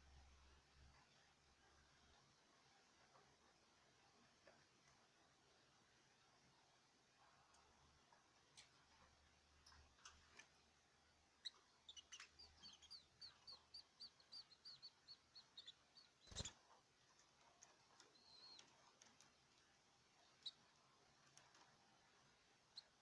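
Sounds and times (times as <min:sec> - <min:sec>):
small bird chirping: 0:11.4 - 0:16.7, 0:17.6 - 0:19.3, 0:20.1 - 0:21.8, 0:22.4 - 0:23.0.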